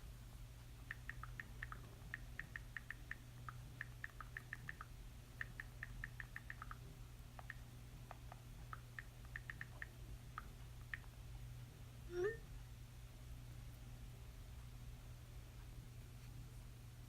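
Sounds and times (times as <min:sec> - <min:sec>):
faint steady hum: 0:00.0 - 0:17.0
phone keyboard tapping: 0:00.9 - 0:06.8, 0:07.4 - 0:11.2.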